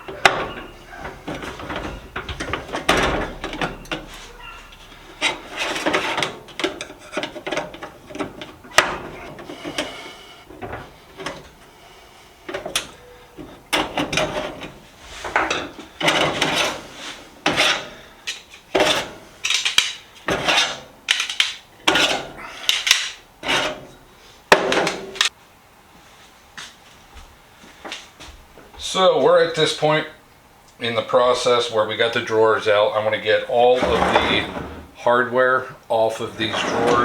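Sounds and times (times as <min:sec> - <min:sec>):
scraping on metal tool box: 0:00.0 - 0:11.0, 0:14.1 - 0:18.0, 0:23.4 - 0:23.9, 0:33.6 - 0:35.0, 0:36.2 - 0:37.0.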